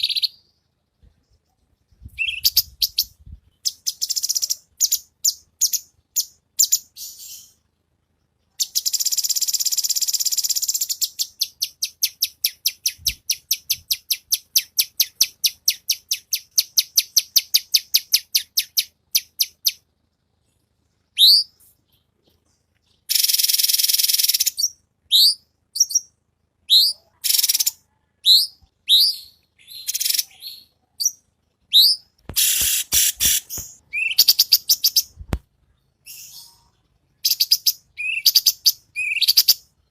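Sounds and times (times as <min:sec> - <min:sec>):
bird singing: 0:00.0 - 0:19.9, 0:20.5 - 0:39.9.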